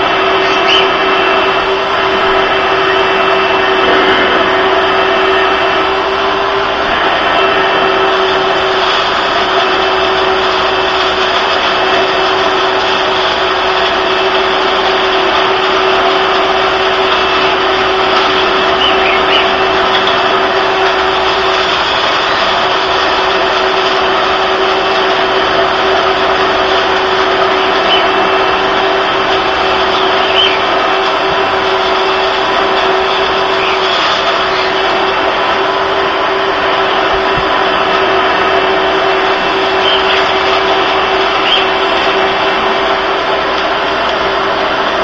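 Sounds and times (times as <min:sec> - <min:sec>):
vacuum cleaner running: 0:00.0 - 0:45.0.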